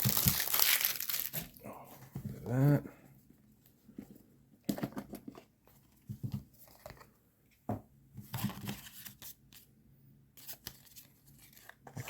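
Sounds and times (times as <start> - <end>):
packaging crinkling and tearing: 0.0 - 1.6.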